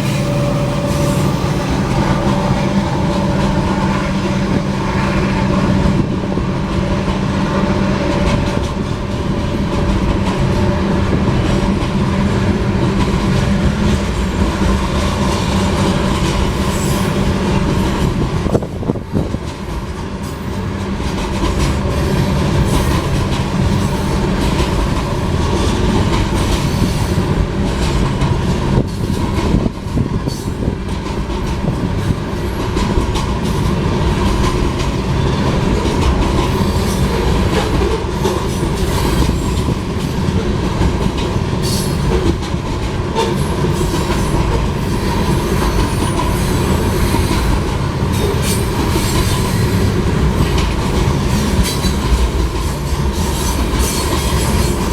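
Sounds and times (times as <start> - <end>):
wheel squeal: 0.0 - 5.0
train wheels rumbling on rails: 0.0 - 54.9.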